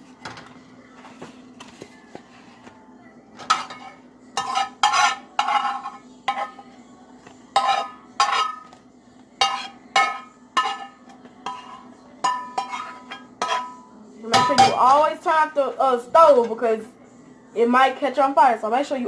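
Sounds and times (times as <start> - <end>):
spoon scraping metal pot: 3.4 - 6.6, 7.6 - 8.7, 9.4 - 13.8.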